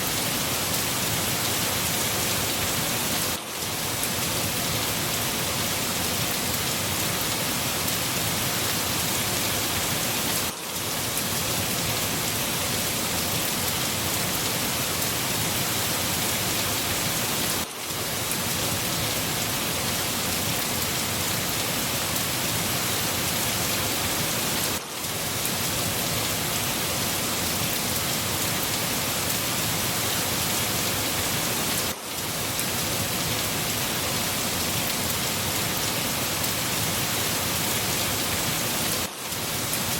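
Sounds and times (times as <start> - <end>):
dense rainfall: 0.0 - 39.9.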